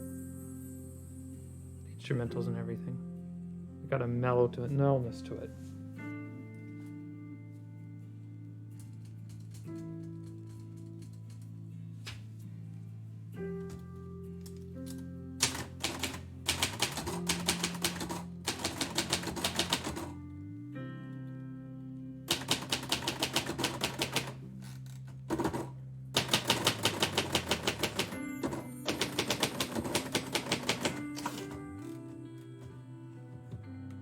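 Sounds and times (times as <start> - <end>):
instrumental music: 0.0 - 34.0
typewriter keystrokes: 15.4 - 20.2, 22.3 - 24.4, 25.3 - 32.1.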